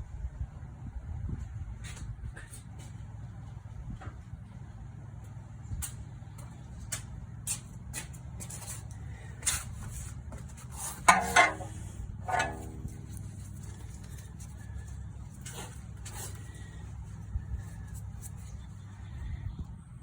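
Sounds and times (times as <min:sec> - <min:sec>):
ringing metal strikes: 0:11.1 - 0:13.8
metal tools clinking: 0:11.1 - 0:14.2
low hum: 0:11.1 - 0:20.0.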